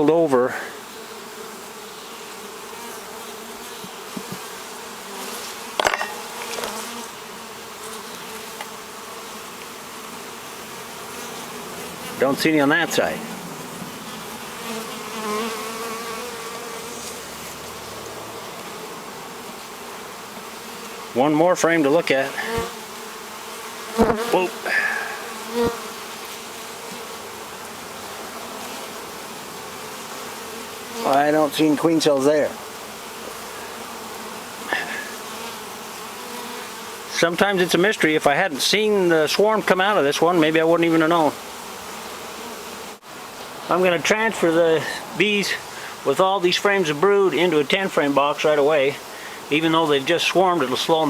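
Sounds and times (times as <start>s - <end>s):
honeybees buzzing: 0.0s - 51.0s
knocks on hive: 3.8s - 4.5s, 5.8s - 6.8s.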